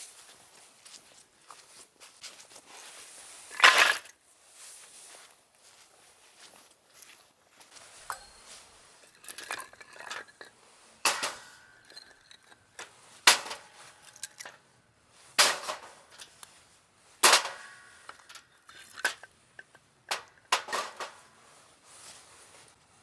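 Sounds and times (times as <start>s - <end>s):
metal cookware clinking and knocking: 8.0s - 14.6s, 15.4s - 16.3s, 17.2s - 21.3s.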